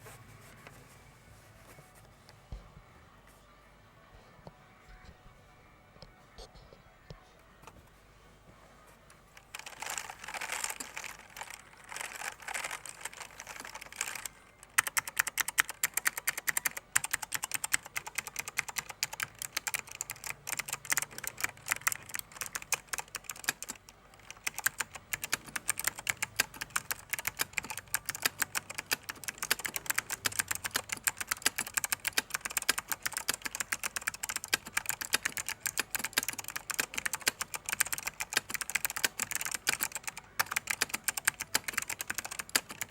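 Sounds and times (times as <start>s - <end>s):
mechanical keyboard typing clicks: 9.4s - 42.9s.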